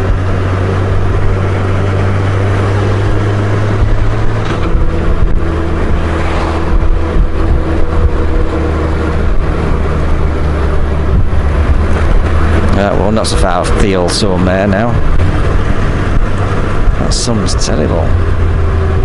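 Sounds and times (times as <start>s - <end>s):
motorcycle engine running: 0.0s - 19.0s
wind noise: 0.0s - 19.0s.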